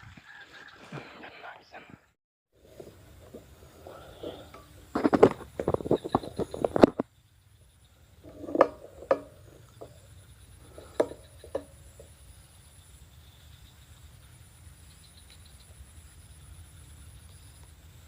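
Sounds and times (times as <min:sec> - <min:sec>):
insects trilling: 0:02.6 - 0:18.0
short knocks and rustles: 0:10.7 - 0:12.2.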